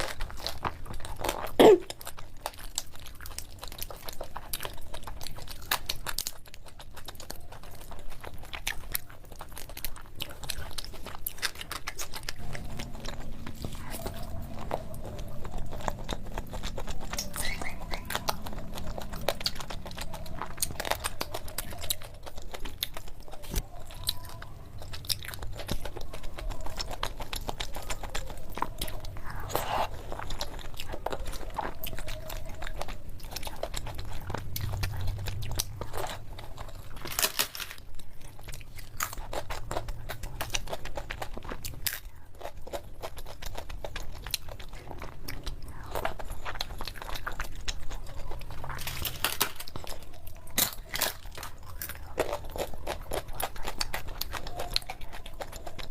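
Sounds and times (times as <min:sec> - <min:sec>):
person chewing: 0:00.0 - 0:55.9.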